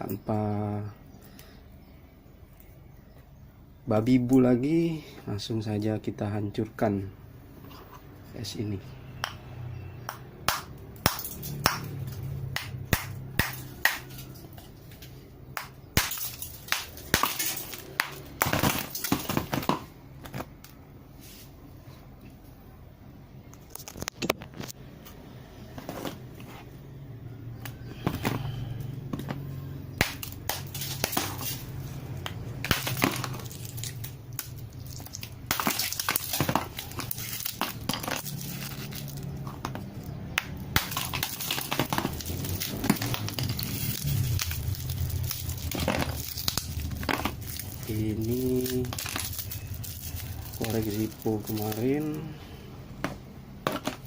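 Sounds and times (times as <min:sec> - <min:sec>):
hammer chipping ice: 0:16.0 - 0:19.8, 0:32.7 - 0:34.0, 0:34.9 - 0:39.0.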